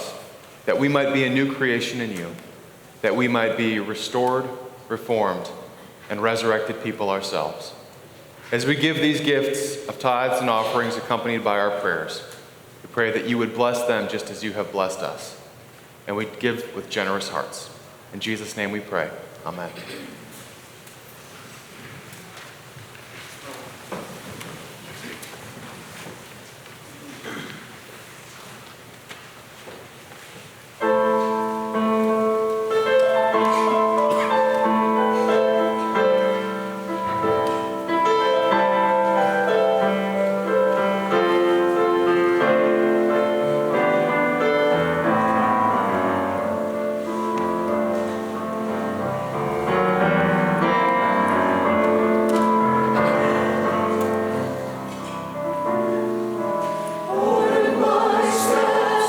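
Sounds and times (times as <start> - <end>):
keyboard accompaniment: 30.8 - 59.0
church choir singing a hymn: 32.8 - 54.8, 56.3 - 59.0.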